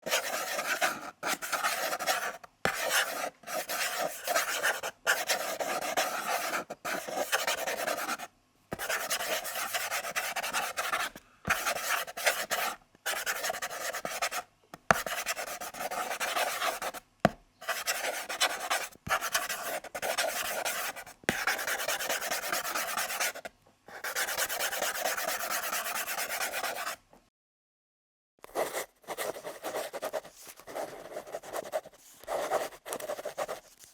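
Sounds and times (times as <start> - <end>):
pencil writing on paper: 0.0 - 17.0, 17.6 - 27.0, 28.4 - 33.9.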